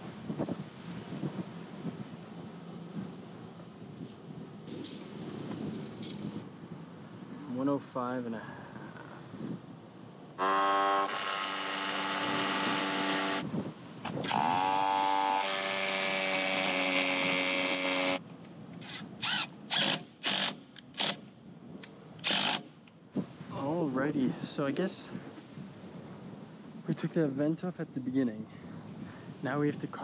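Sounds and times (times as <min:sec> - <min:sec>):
power drill running: 0:10.4 - 0:13.4, 0:14.1 - 0:18.2, 0:18.8 - 0:21.2, 0:22.2 - 0:22.7.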